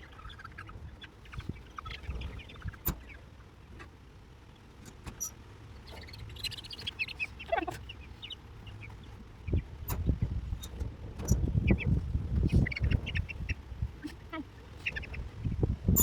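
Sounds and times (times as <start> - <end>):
chicks peeping and chirping: 0.0 - 3.9, 5.8 - 16.0.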